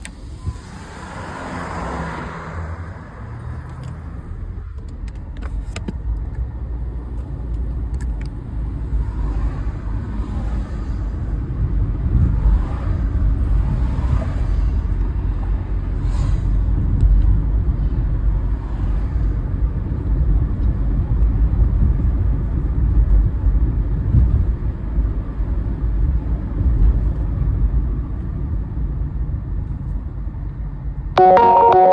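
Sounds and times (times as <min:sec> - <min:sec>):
cars driving past: 0:00.0 - 0:04.6, 0:08.4 - 0:19.6.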